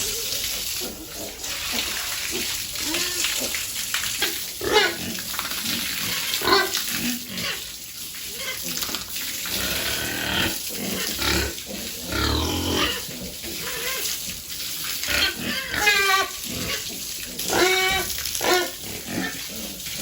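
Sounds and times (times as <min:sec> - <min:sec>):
piglets grunting: 0:00.0 - 0:05.3, 0:08.3 - 0:14.2, 0:15.0 - 0:20.0
piglets squealing: 0:00.8 - 0:03.6, 0:06.0 - 0:06.8, 0:08.3 - 0:08.8, 0:09.8 - 0:14.2, 0:15.1 - 0:19.4.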